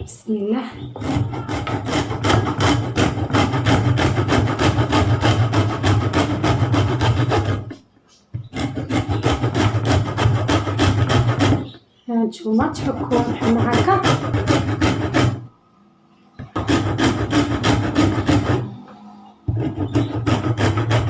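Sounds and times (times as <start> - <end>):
lemon rasping on grater: 8.4 - 11.7, 12.6 - 15.4, 19.5 - 21.0.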